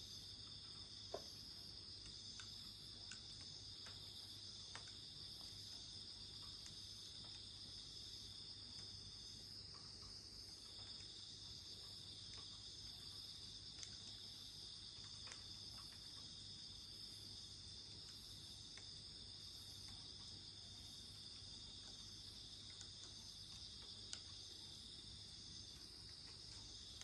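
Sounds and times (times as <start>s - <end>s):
crickets chirring: 0.0s - 27.0s.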